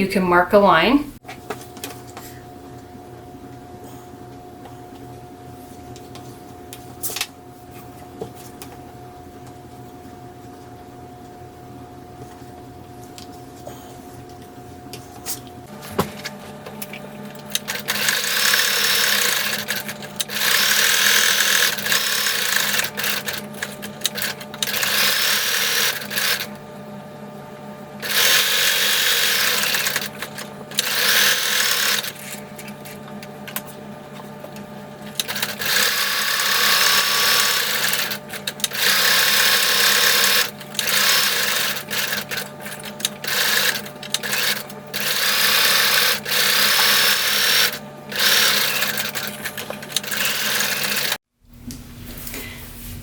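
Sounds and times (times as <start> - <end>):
sewing machine stitching: 17.3 - 26.6, 28.0 - 51.2.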